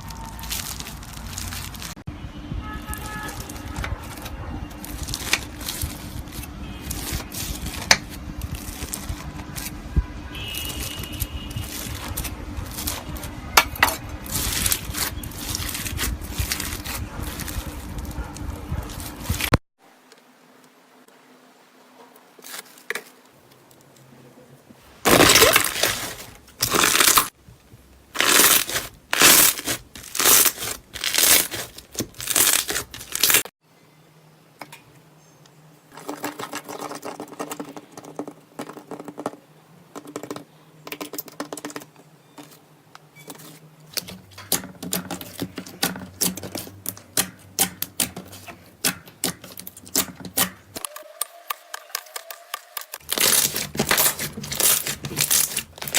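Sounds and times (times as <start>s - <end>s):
slime crunching and crackling: 0.0s - 2.0s, 3.2s - 9.8s, 10.4s - 19.6s, 24.9s - 27.4s, 28.1s - 33.5s, 43.9s - 55.9s.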